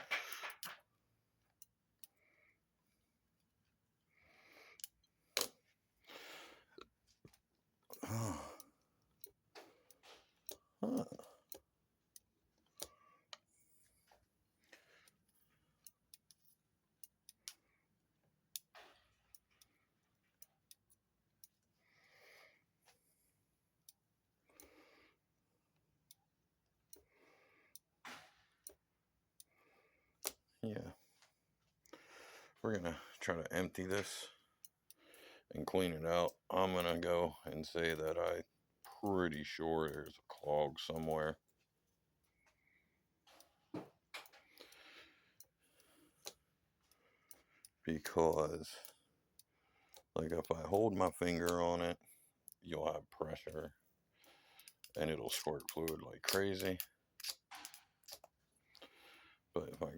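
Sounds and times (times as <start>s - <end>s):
faint clicks: 29.4s - 59.9s.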